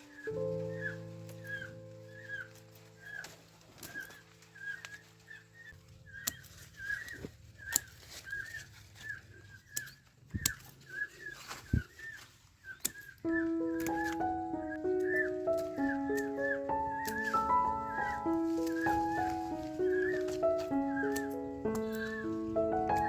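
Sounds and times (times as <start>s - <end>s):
music: 0.0s - 5.8s, 13.2s - 23.0s
bird chirping: 0.0s - 23.0s.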